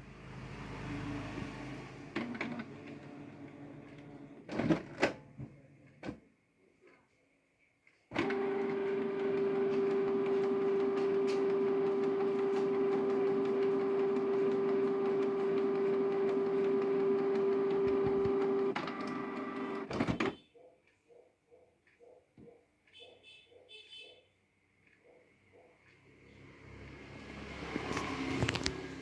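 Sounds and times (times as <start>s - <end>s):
printer mechanism whining: 2.1s - 5.2s, 8.1s - 20.4s, 27.6s - 29.0s.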